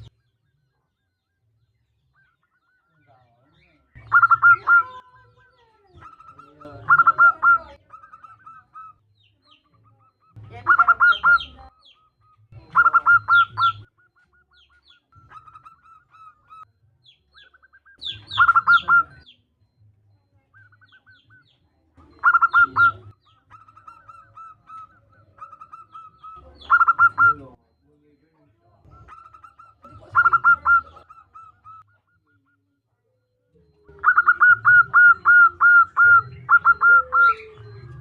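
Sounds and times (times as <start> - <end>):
dove cooing: 2.2 - 27.7, 28.7 - 38.0.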